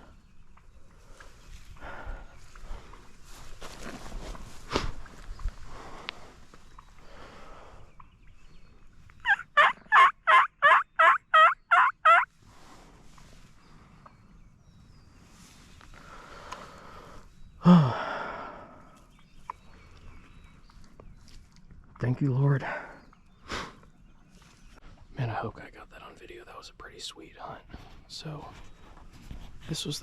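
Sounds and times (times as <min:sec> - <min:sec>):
turkey yelping calls: 0:09.2 - 0:12.3.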